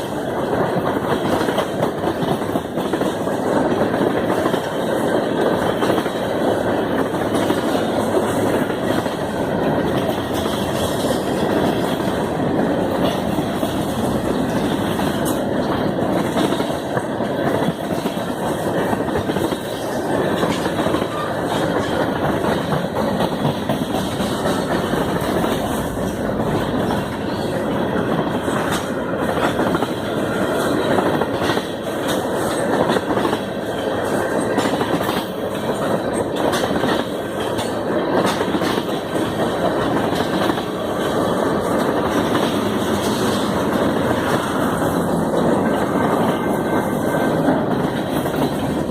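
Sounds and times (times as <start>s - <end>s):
train wheels on rails: 0.0s - 48.9s.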